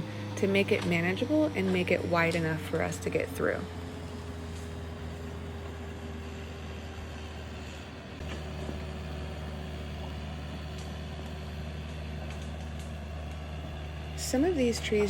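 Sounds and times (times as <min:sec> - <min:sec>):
excavator engine running: 0:00.0 - 0:15.0.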